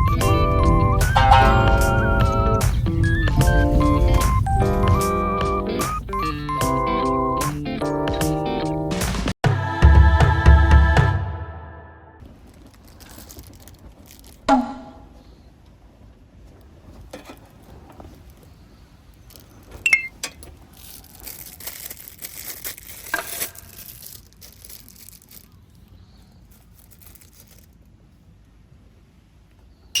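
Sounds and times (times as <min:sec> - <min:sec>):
glass or metal clink: 0:01.2 - 0:02.8, 0:19.9 - 0:20.4
plastic bag crinkling: 0:12.2 - 0:14.5, 0:16.9 - 0:28.0.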